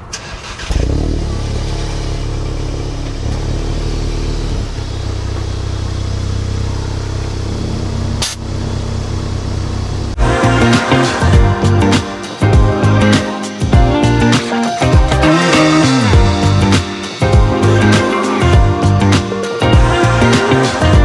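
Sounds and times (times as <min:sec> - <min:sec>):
car engine starting and idling: 0:00.0 - 0:10.6.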